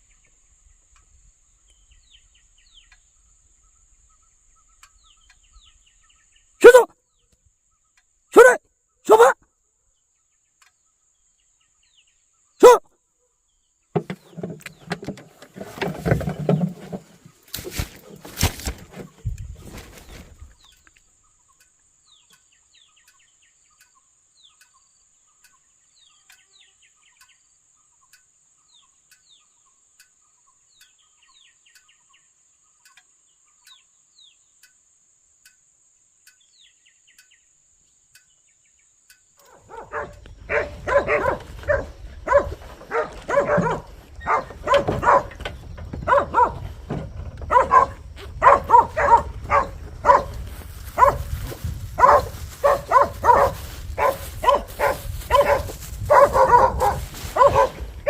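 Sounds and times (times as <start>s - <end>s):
small birds chirping: 0.0s - 58.0s
dog barking: 6.6s - 6.9s, 8.4s - 9.4s, 39.4s - 58.0s
noisy scuffling: 14.0s - 20.6s, 39.5s - 58.0s.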